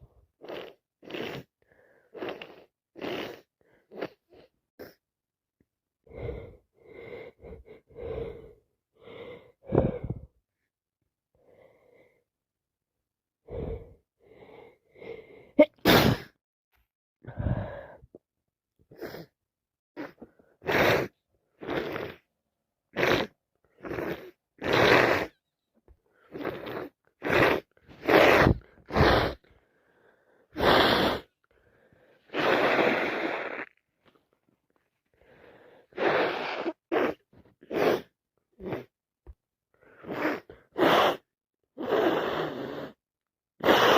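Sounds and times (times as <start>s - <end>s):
sniffles: 0.0s - 1.5s, 2.1s - 5.0s, 20.0s - 22.3s, 23.0s - 25.4s, 26.1s - 29.6s, 30.5s - 31.4s, 32.2s - 33.8s, 35.2s - 38.9s, 39.8s - 43.0s, 43.6s - 43.9s
gasping in-breaths: 6.1s - 10.4s, 17.2s - 18.2s, 27.9s - 30.6s, 31.2s - 32.4s, 35.1s - 36.8s
person sneezing: 15.6s - 16.4s, 36.0s - 38.1s, 43.6s - 43.9s.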